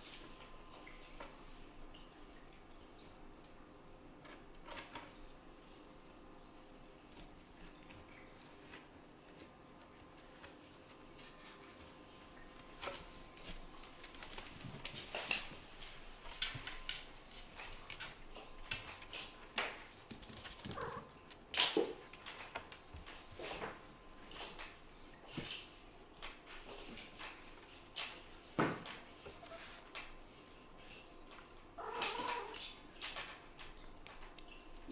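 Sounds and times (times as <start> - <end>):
kittens scuffling: 7.1 - 34.9.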